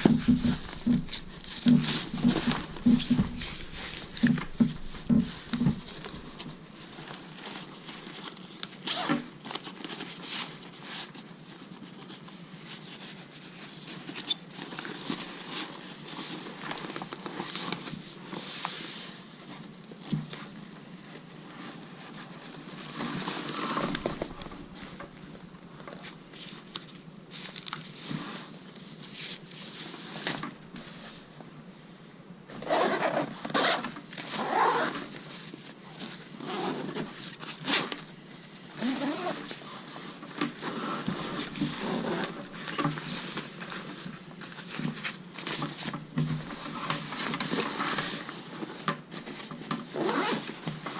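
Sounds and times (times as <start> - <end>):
fabric rustling and bumps: 0.0 - 8.0, 22.8 - 26.4.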